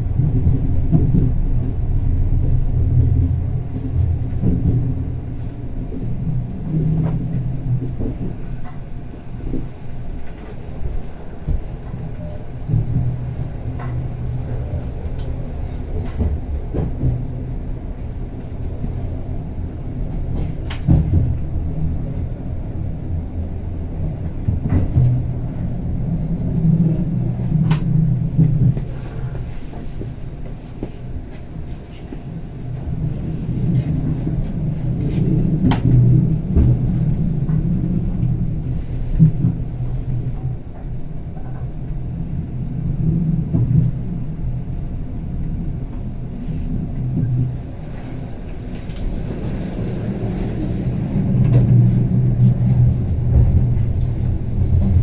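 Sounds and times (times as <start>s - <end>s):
train rumbling on track: 0.0s - 55.0s.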